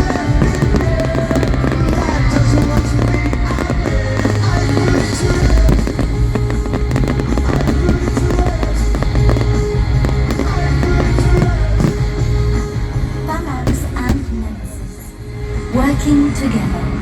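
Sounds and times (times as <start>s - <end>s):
loud music with heavy bass: 0.0s - 14.1s
fireworks bursting and crackling: 0.0s - 15.8s.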